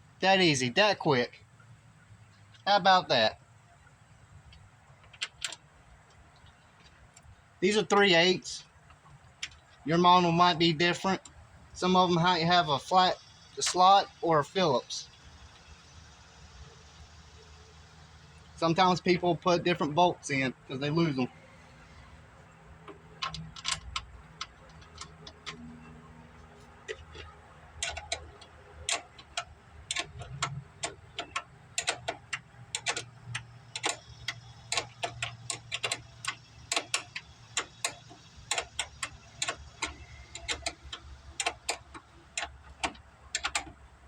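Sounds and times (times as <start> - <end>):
ratchet wrench clicking: 26.9 - 43.8.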